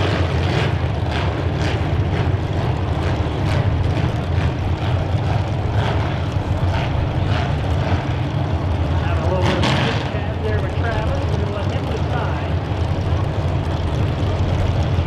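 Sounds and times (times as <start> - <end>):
car engines running loudly: 0.0 - 15.0.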